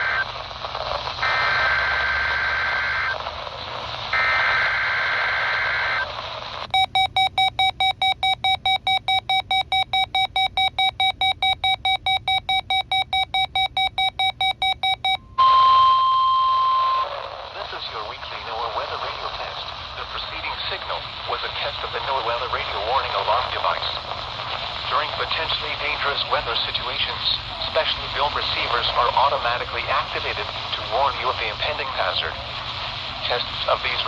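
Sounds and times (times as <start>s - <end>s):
radio static: 0.0s - 6.8s, 16.7s - 34.0s
rapid pulsed beeps: 6.7s - 16.8s
steady warning alarm tone: 6.7s - 17.0s.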